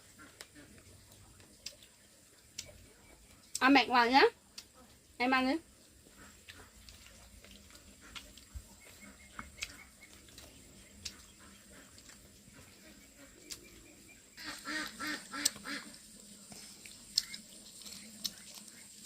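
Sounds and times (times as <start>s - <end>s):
duck quacking: 14.4s - 15.9s.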